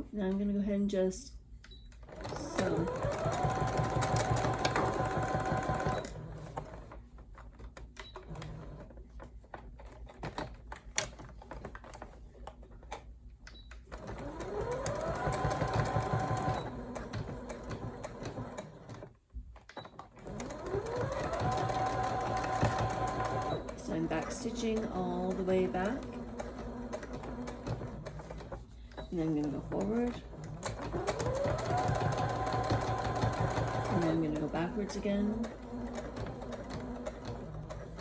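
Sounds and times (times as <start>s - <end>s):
sewing machine motor whine: 2.1s - 6.8s, 14.0s - 19.0s, 20.2s - 38.0s.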